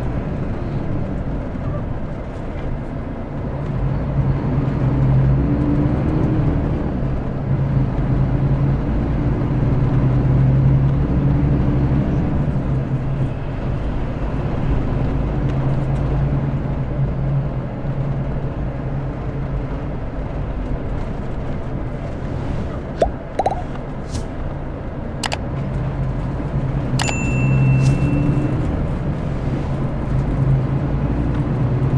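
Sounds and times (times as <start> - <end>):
coach diesel engine drone: 27.0 - 31.9.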